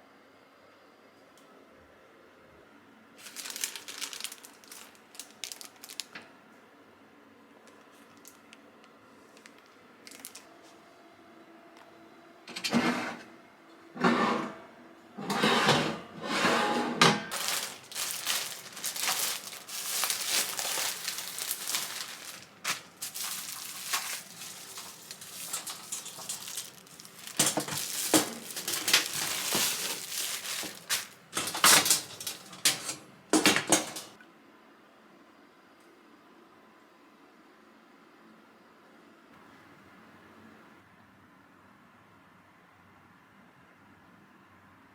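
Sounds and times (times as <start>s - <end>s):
household objects rustling and clattering: 3.2s - 6.0s, 15.2s - 34.2s.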